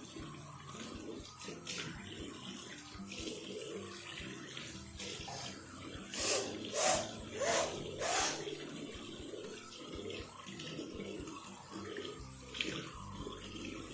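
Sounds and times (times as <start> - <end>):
tap water running into basin: 0.0 - 13.9
forceful nose blows: 6.2 - 8.6.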